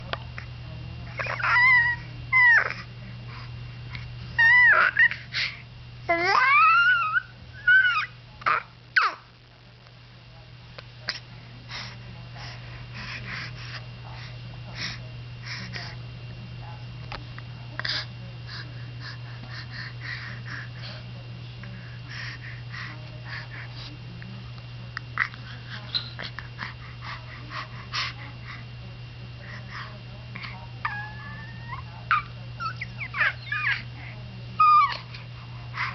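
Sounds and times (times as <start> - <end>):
steady low hum: 0.0 - 35.9
baby high-pitched vocal calls: 1.2 - 2.7.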